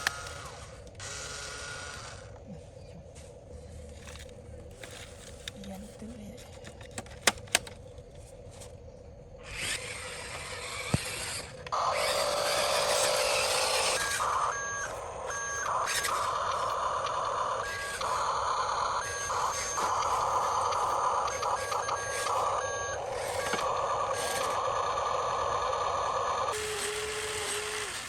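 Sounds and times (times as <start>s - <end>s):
sharp clicks: 0.0s - 1.3s, 6.4s - 8.0s
electric motors and gears whirring: 0.0s - 28.0s
two-tone reversing beep: 13.0s - 23.6s.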